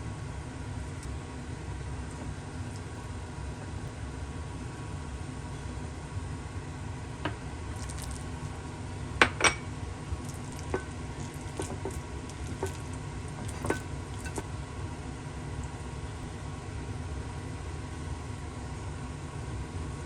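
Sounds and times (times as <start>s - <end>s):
steady low hum: 0.0s - 20.0s
utensils clinking on cookware: 10.3s - 14.4s.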